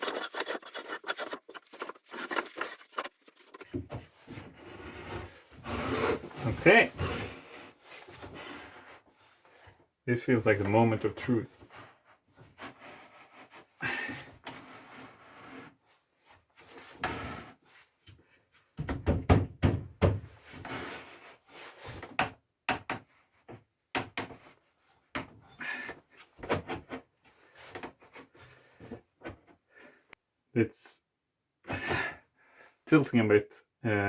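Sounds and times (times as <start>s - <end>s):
wooden knocks and clunks: 18.8s - 20.4s.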